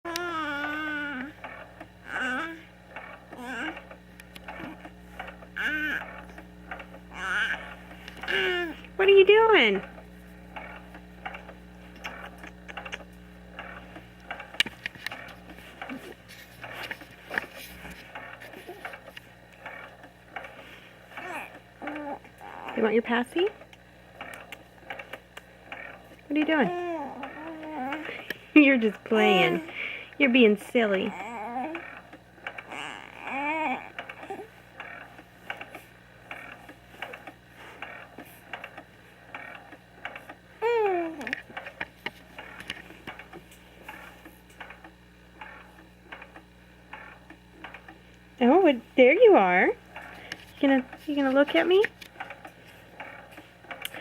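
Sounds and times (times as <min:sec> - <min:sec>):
steady low hum: 0:00.0 - 0:54.0
infant cooing: 0:00.1 - 0:01.4, 0:02.0 - 0:02.7, 0:03.3 - 0:03.8, 0:05.6 - 0:06.2, 0:07.1 - 0:08.8, 0:21.2 - 0:22.9, 0:26.5 - 0:28.2, 0:29.2 - 0:29.7, 0:31.0 - 0:32.0, 0:32.6 - 0:34.5, 0:40.6 - 0:41.3
small clicks and ticks: 0:00.1 - 0:08.6, 0:09.8 - 0:20.6, 0:21.2 - 0:26.6, 0:30.8 - 0:40.4, 0:41.2 - 0:48.2, 0:49.9 - 0:54.0.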